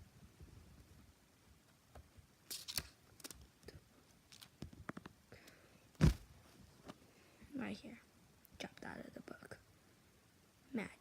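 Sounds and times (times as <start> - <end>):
loud thump: 6.0 - 6.3.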